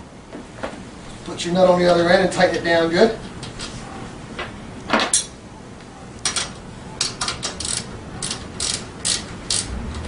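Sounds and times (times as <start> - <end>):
socket ratchet clicking: 7.0 - 10.0.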